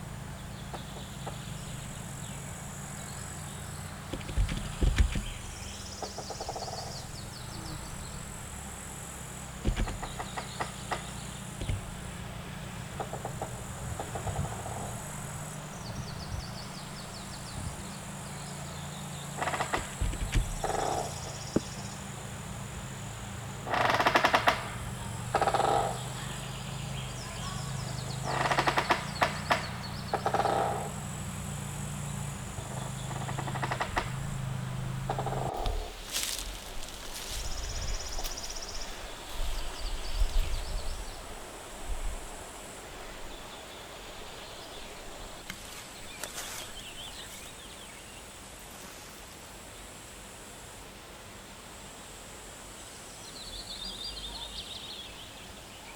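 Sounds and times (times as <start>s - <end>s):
steady high buzz: 0.0s - 47.8s
rustling bursts: 3.8s - 18.7s, 33.2s - 41.0s.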